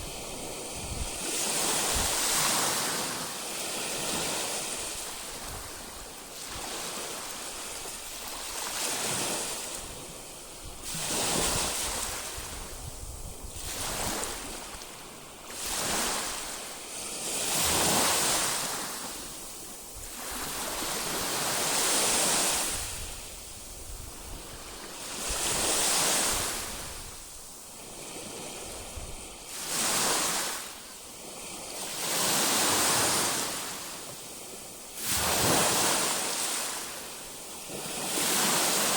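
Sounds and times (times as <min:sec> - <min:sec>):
wind rumble on microphone: 0:00.0 - 0:03.2, 0:03.8 - 0:18.1, 0:19.9 - 0:30.3
waves washing onto shore: 0:00.0 - 0:38.9.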